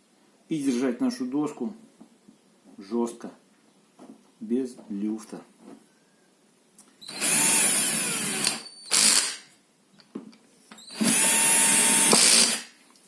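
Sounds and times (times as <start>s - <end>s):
power drill driving screw: 7.0s - 9.5s, 10.8s - 12.8s.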